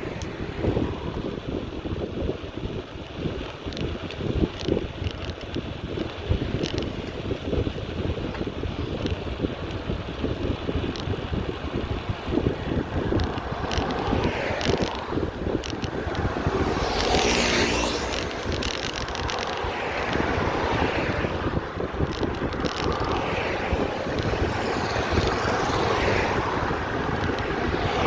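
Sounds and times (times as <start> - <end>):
motor vehicle passing: 0.0 - 2.2, 9.3 - 28.0
wind buffeting microphone: 0.0 - 28.0.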